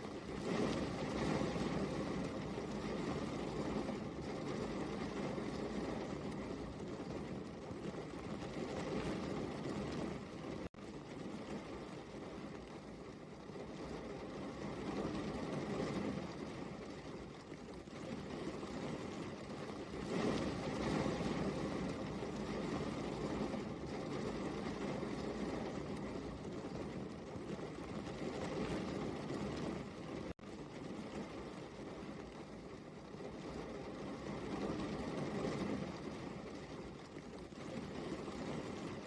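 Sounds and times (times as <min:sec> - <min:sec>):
heavy rain: 0:00.4 - 0:10.6, 0:20.0 - 0:38.9.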